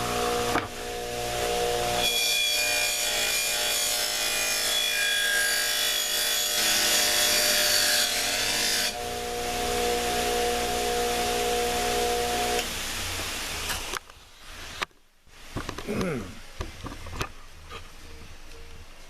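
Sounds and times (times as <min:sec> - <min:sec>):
steady hum: 0:09.0 - 0:19.0.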